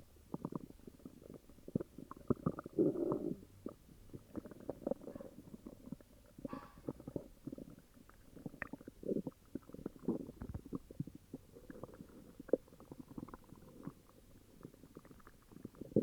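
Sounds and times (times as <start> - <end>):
stomach growling and gurgling: 0.0 - 16.0.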